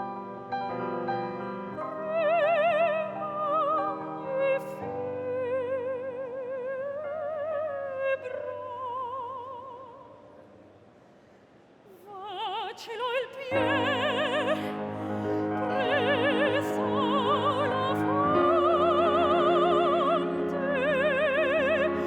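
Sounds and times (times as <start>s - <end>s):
operatic singing: 12.1s - 22.0s.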